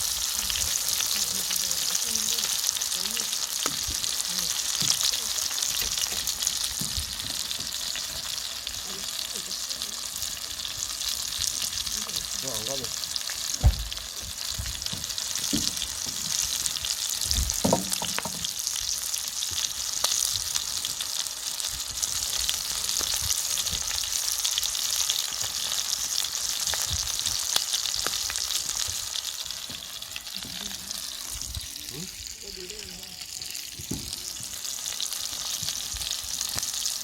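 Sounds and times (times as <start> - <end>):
meat sizzling in a pan: 0.0 - 37.0
low thuds: 13.6 - 15.1.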